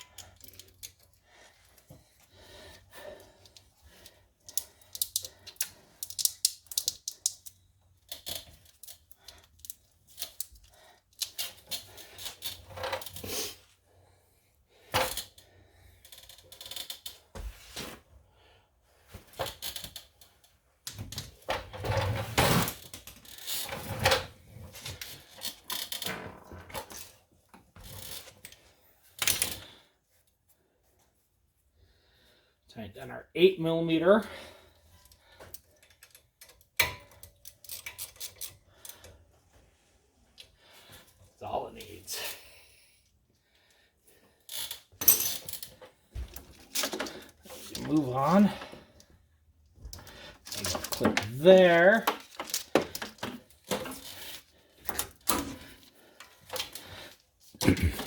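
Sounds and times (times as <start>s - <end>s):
metallic clicks of hand tools: 4.5s - 11.8s.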